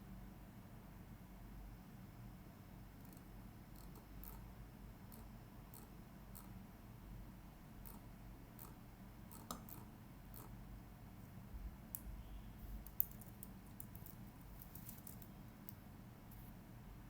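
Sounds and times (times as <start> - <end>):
computer mouse clicks: 7.8 - 8.0, 8.6 - 10.6, 12.8 - 15.8.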